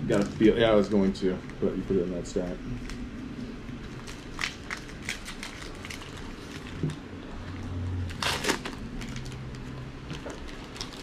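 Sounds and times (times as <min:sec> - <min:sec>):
plastic packaging rustling: 0:03.7 - 0:11.0.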